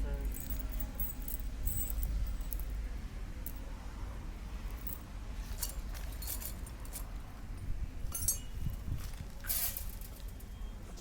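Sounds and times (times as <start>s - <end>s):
metal parts clinking: 0.2s - 2.8s, 4.8s - 7.2s, 8.1s - 10.6s.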